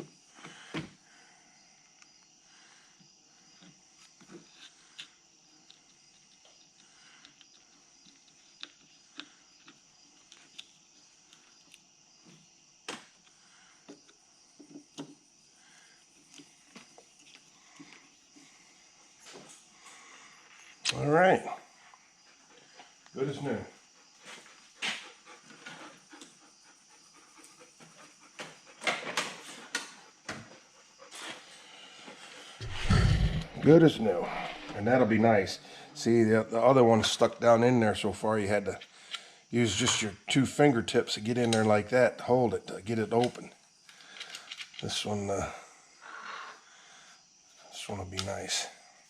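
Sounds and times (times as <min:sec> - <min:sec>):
crickets chirping: 0:00.0 - 0:49.0
dog panting: 0:23.8 - 0:29.0.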